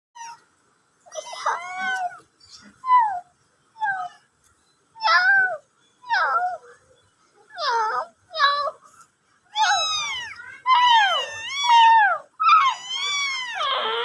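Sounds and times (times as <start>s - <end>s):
cat meowing: 1.2s - 2.2s, 9.6s - 14.0s.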